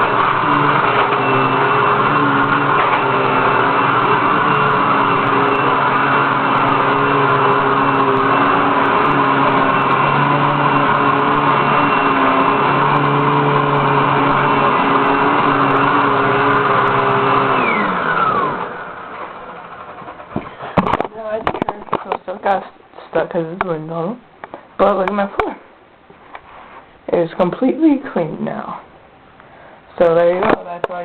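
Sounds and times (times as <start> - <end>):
vacuum cleaner motor whine: 0.0 - 21.7.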